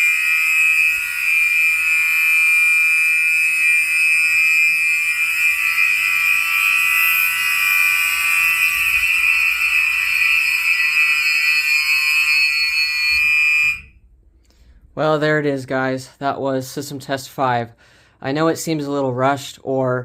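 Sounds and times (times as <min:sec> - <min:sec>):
fire alarm horns steady tone: 0:00.0 - 0:14.2.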